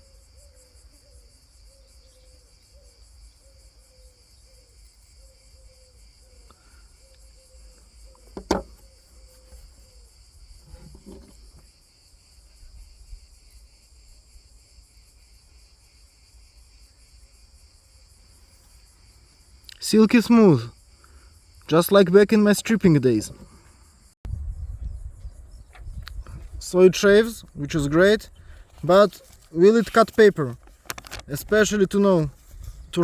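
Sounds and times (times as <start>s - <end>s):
crickets chirring: 0.0s - 33.0s
soft knock: 8.4s - 8.8s.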